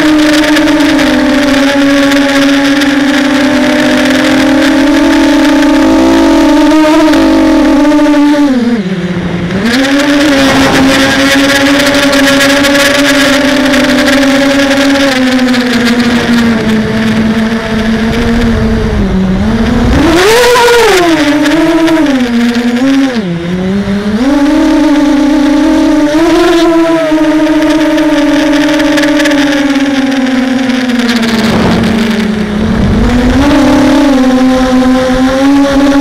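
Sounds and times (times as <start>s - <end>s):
drone propellers whining: 0.0s - 36.0s
wind buffeting microphone: 0.2s - 22.6s, 27.1s - 36.0s.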